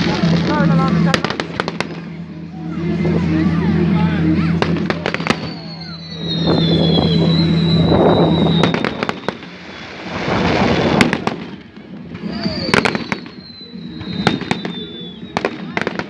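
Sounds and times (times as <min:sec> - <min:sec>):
fireworks bangs and crackling: 0:00.0 - 0:16.0
falling firework whistles: 0:04.9 - 0:16.0.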